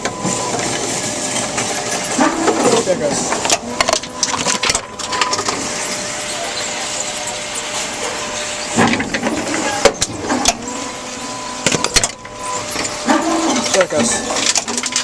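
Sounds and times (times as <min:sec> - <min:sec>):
machine whirring: 0:00.0 - 0:15.0.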